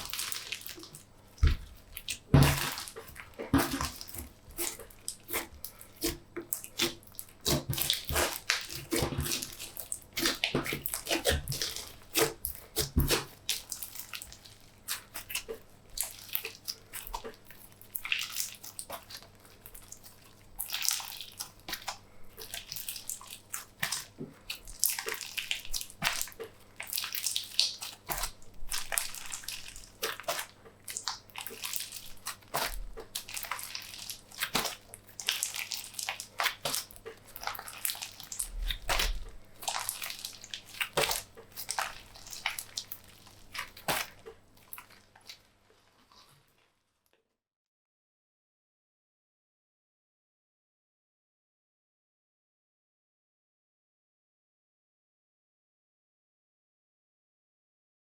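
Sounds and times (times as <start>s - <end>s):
slime squelching: 0.0s - 46.7s.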